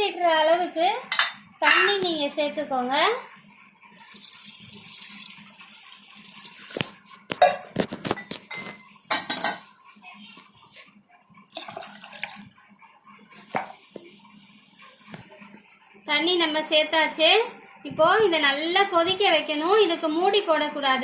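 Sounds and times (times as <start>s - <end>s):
water pouring into pot: 3.8s - 7.6s, 11.5s - 12.5s.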